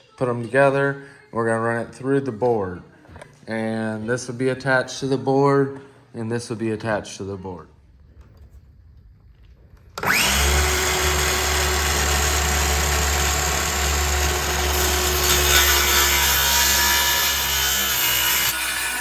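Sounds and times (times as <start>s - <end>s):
power tool cutting wood: 10.0s - 19.0s.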